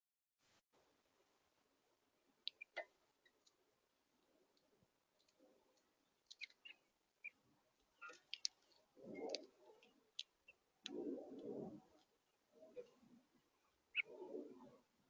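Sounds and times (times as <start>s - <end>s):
birds pecking at seed: 2.2s - 14.9s
dove cooing: 8.0s - 12.0s, 12.6s - 13.2s, 13.9s - 14.9s.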